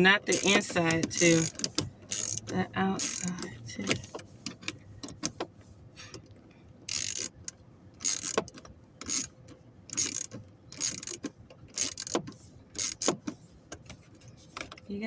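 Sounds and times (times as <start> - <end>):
socket ratchet clicking: 0.3 - 5.4, 6.9 - 9.3, 9.9 - 13.4.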